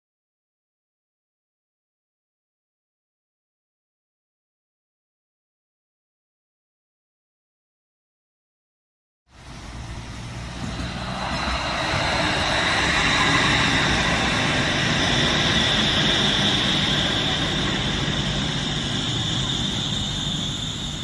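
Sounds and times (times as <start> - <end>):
vehicle engine rumble with whine: 9.4 - 21.0.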